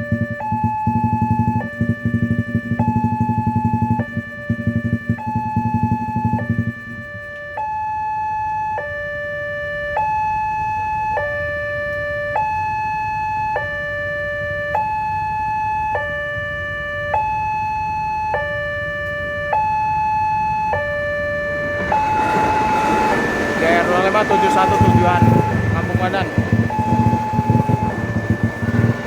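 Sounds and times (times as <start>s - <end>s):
two-tone warning siren: 0.0s - 29.0s
low rumble: 21.7s - 29.0s.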